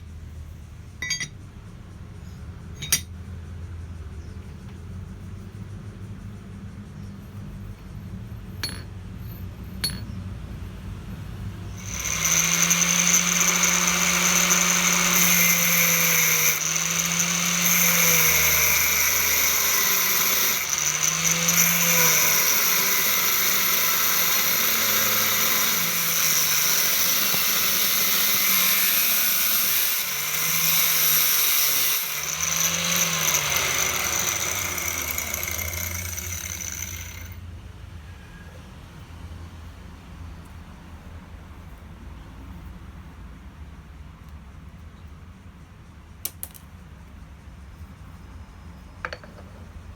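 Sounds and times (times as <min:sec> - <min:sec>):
grinder grinding steel: 0:01.0 - 0:01.3, 0:02.8 - 0:03.1, 0:11.8 - 0:37.4.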